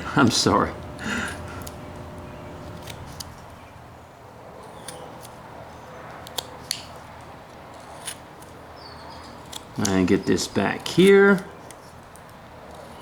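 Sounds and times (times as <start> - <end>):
knife clicks carving wood: 2.6 - 3.6, 6.2 - 7.0, 9.2 - 10.1.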